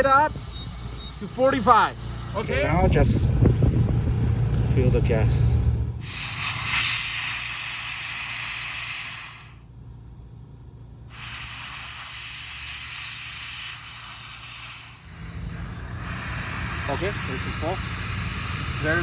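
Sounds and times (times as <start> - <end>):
air hose hissing: 0.0 - 3.0, 6.0 - 9.7, 11.1 - 19.0.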